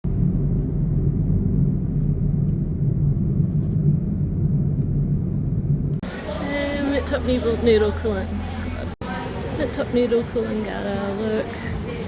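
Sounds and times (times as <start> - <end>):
loud low rumble: 0.0 - 9.0.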